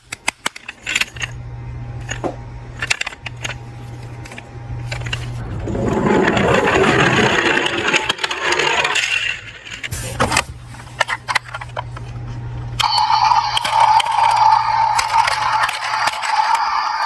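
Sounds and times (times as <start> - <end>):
metal toy cars clattering: 0.0 - 1.3, 4.2 - 11.8, 12.8 - 17.0.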